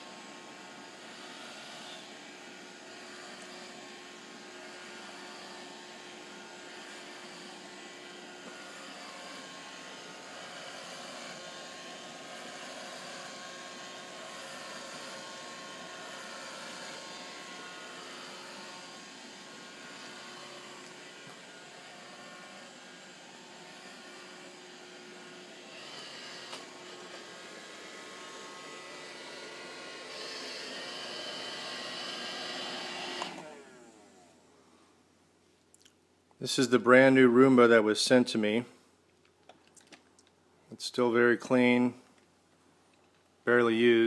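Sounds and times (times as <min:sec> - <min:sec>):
robot vacuum whirring: 0:00.0 - 0:34.4.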